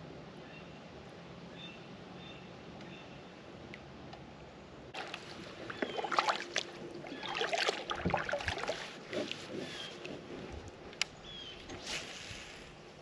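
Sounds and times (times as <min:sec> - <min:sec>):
water splashing around kayak: 0:04.9 - 0:11.0.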